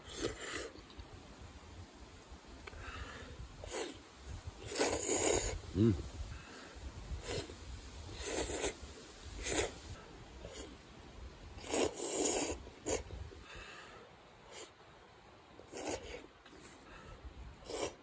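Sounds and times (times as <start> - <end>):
noodles being slurped: 4.6 - 5.6, 8.1 - 8.8, 9.4 - 9.8, 11.6 - 13.1, 17.6 - 18.0.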